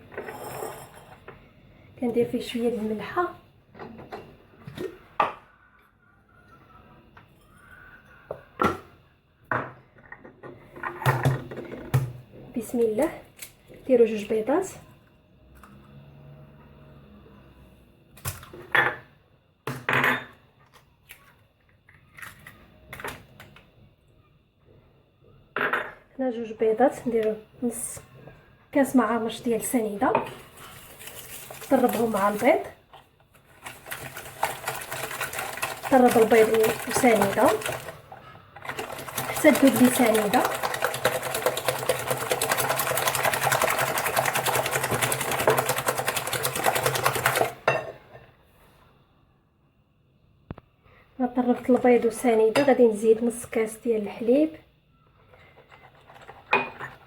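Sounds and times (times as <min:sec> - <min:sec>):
hand mixer beaters clattering in bowl: 0:30.3 - 0:32.7, 0:33.4 - 0:47.6.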